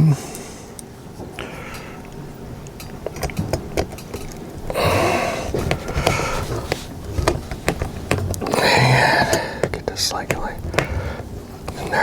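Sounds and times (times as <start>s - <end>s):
breathy rustling noise: 4.7s - 12.0s.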